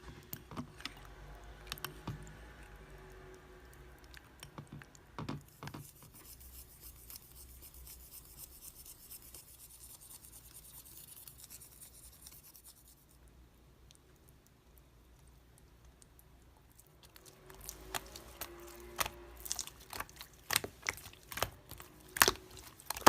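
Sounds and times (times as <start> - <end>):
slime squelches: 0.0 - 23.0
slime fine crackling: 17.2 - 23.0.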